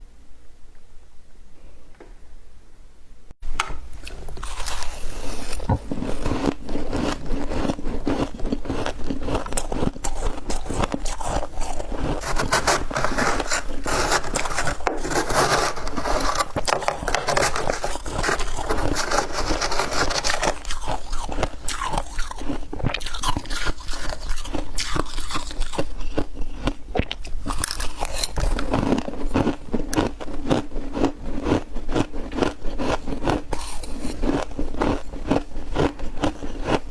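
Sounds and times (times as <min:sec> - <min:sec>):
ice being crunched and chewed: 0:04.0 - 0:36.9
spoon scraping ice: 0:04.4 - 0:26.0, 0:27.5 - 0:29.0.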